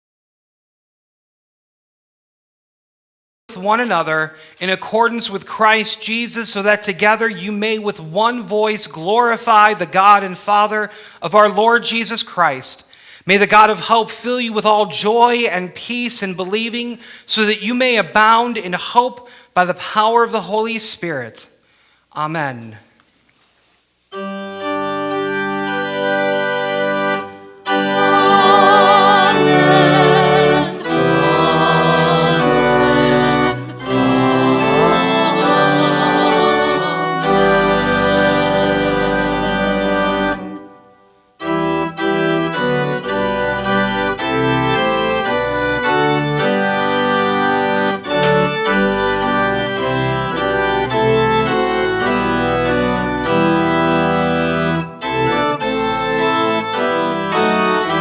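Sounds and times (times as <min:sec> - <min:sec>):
organ playing full chords: 0:03.5 - 0:12.5, 0:24.1 - 0:58.0.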